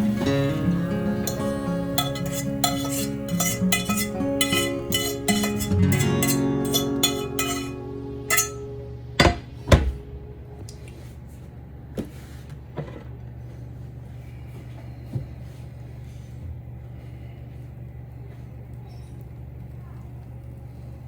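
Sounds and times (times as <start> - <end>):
background guitar music: 0.0 - 10.6
steady low hum: 0.0 - 21.0
kitchenware knocks and clinks: 1.3 - 10.0.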